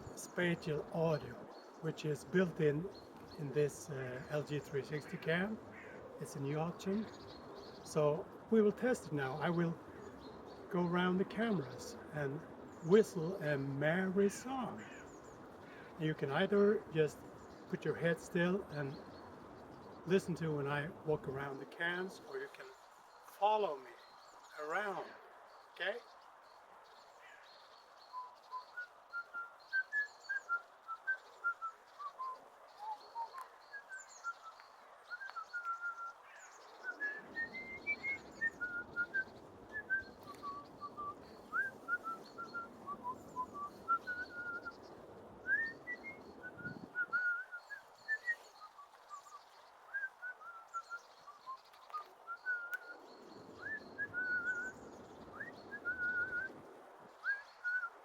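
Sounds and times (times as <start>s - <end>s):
man whistling a tune: 36.9s - 44.7s, 45.5s - 48.8s, 49.9s - 53.0s, 53.6s - 56.5s, 57.2s - 58.0s
wind rumble on microphone: 36.9s - 47.4s, 52.0s - 58.0s.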